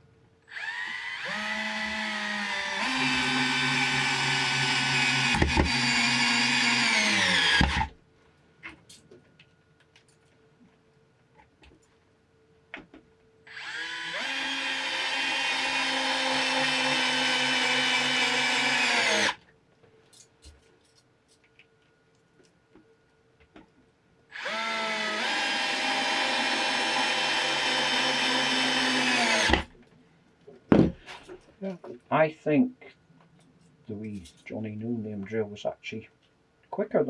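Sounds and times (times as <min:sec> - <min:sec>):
electric screwdriver driving screws: 0:00.5 - 0:07.9, 0:13.5 - 0:19.4, 0:24.4 - 0:29.7.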